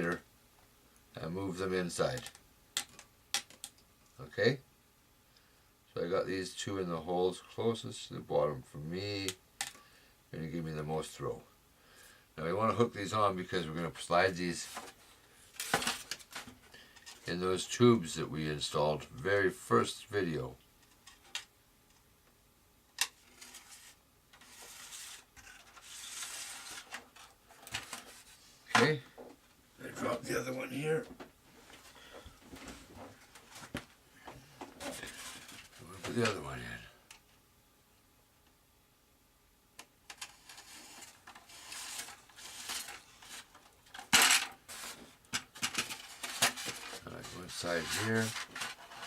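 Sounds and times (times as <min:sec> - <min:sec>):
wire scraping in plastic tube: 0:23.3 - 0:27.3, 0:40.2 - 0:43.5.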